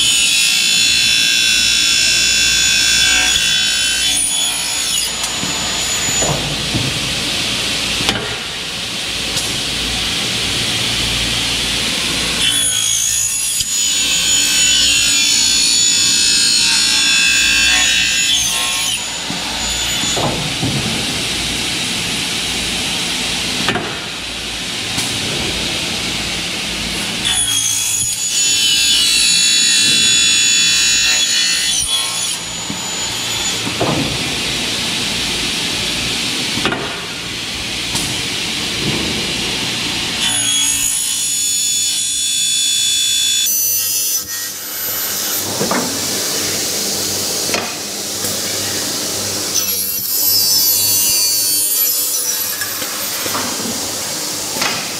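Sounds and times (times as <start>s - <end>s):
high-pitched saw cutting metal: 0.0s - 6.2s, 12.4s - 20.2s, 27.2s - 33.6s, 40.2s - 45.5s, 49.5s - 53.4s
saw running: 0.0s - 6.4s, 9.8s - 23.2s, 26.3s - 36.2s, 39.6s - 54.9s.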